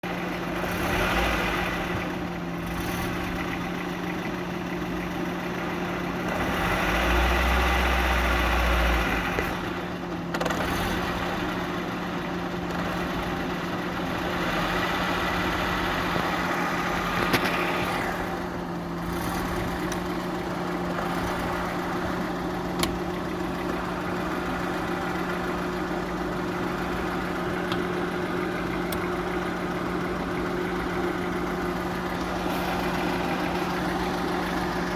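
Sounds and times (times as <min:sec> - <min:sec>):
gearbox hum and whir: 0:00.0 - 0:34.9.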